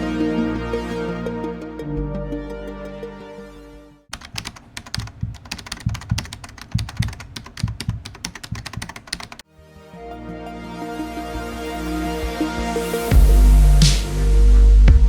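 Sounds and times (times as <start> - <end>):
electronic background music: 0.0 - 4.1, 9.5 - 15.0
computer keyboard typing clicks: 4.1 - 9.4.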